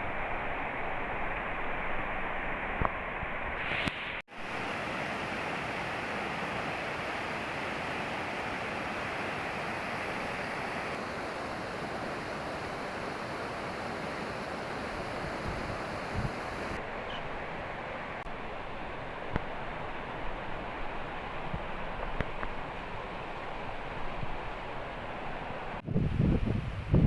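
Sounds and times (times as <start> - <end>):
river water rushing: 4.3 - 25.8.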